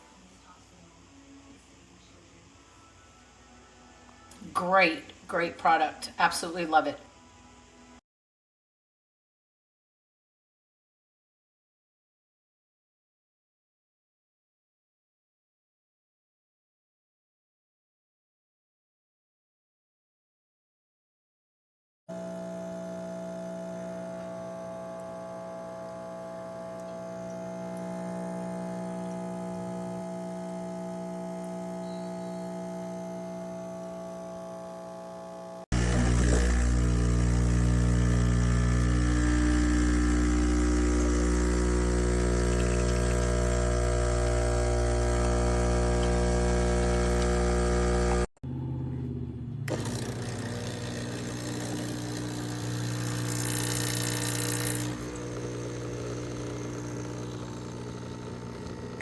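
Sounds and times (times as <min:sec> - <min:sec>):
espresso machine humming: 0:22.1 - 0:48.3, 0:49.7 - 0:59.0
vibratory pump buzzing: 0:22.1 - 0:48.3, 0:49.7 - 0:59.0.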